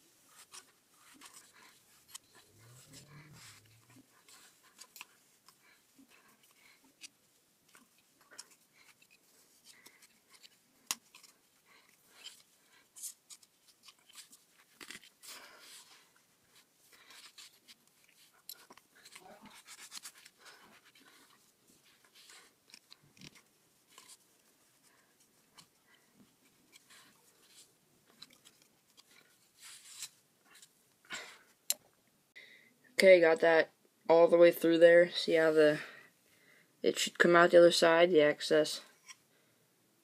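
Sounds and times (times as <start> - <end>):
packing material rustling and scraping: 0.0 - 30.8.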